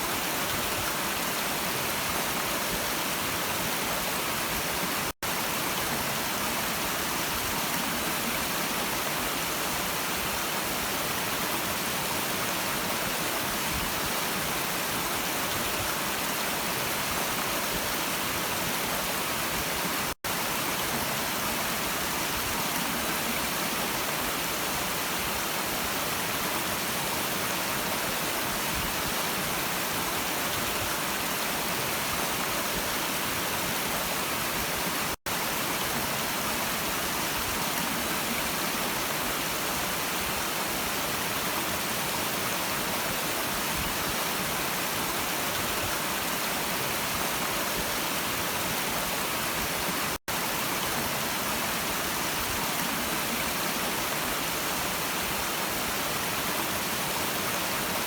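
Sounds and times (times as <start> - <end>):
brook running: 0.0 - 58.0.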